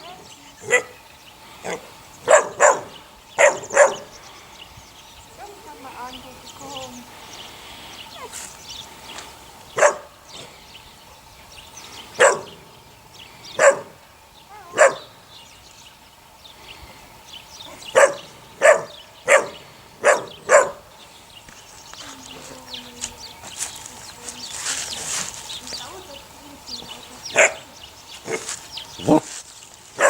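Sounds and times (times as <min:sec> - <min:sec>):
puppy barking: 0:00.6 - 0:01.0, 0:01.6 - 0:04.1, 0:09.8 - 0:10.5, 0:12.2 - 0:12.6, 0:13.6 - 0:15.1, 0:17.9 - 0:20.9, 0:27.3 - 0:27.7.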